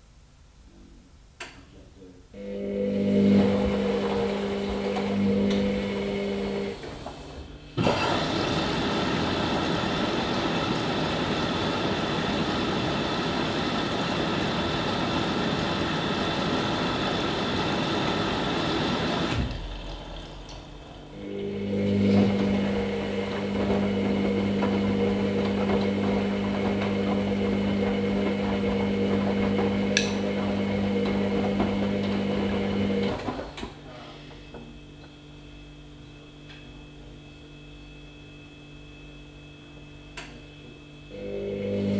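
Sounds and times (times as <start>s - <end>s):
washing machine motor hum: 2.4s - 41.9s
water rushing into washing machine: 2.5s - 33.9s, 41.2s - 41.9s.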